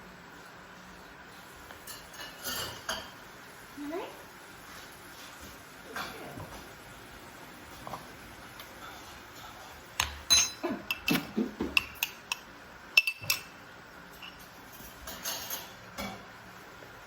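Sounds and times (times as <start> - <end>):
spoon clinking against a dish: 10.0 - 15.8.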